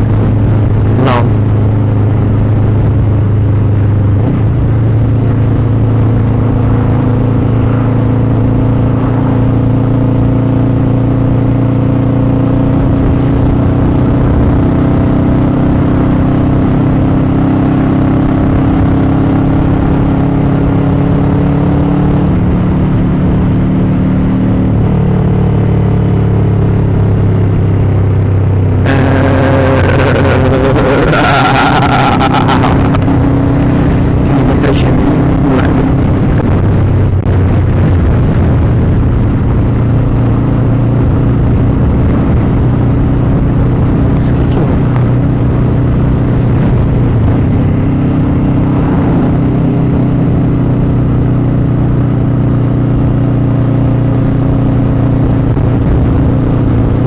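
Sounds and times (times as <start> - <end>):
motorcycle engine running: 0.0 - 57.0
broad rushing noise: 28.8 - 50.3.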